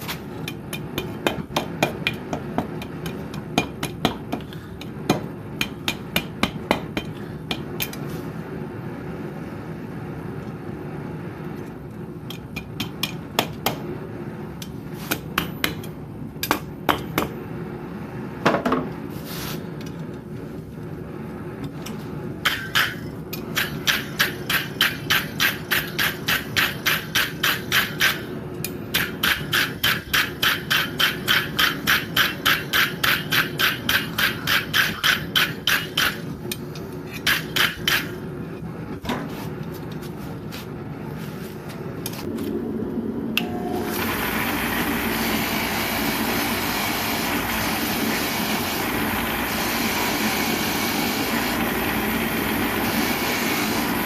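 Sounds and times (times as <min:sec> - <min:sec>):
steady low hum: 0:00.0 - 0:54.0
hammer striking steel on anvil: 0:00.4 - 0:08.0, 0:12.3 - 0:13.8, 0:14.6 - 0:17.4, 0:22.4 - 0:38.2.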